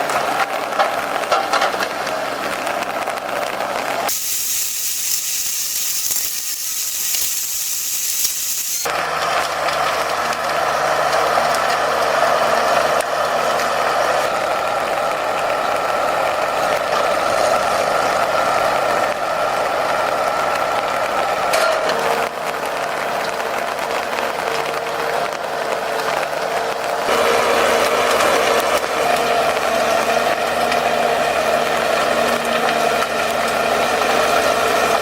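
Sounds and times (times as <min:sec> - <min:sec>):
high-pitched hiss: 0:04.1 - 0:08.9.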